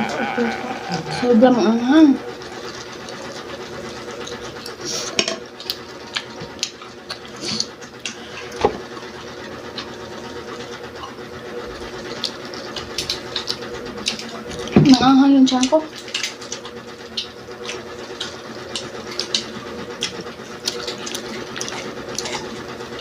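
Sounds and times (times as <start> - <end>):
steady electric hum: 0.0 - 23.0
chewing crispy food: 2.3 - 14.8, 15.4 - 23.0.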